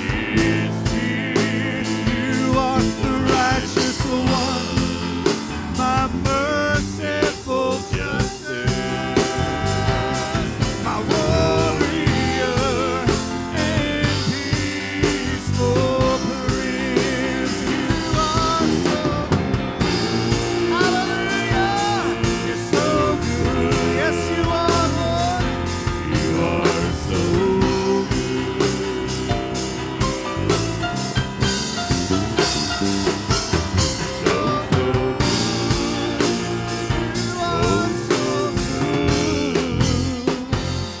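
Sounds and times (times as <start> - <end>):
drum kit beat: 0.0 - 41.0
live band playing: 0.0 - 41.0
melodic lead line: 0.0 - 41.0.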